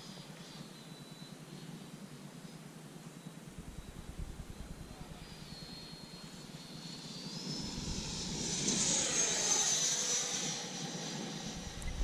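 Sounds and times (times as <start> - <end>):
model jet ducted fan whining: 3.4 - 12.0.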